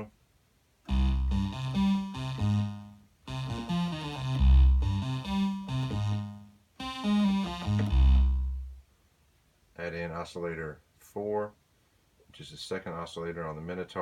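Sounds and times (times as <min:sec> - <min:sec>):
analog synthesizer bass line: 0:00.9 - 0:08.8.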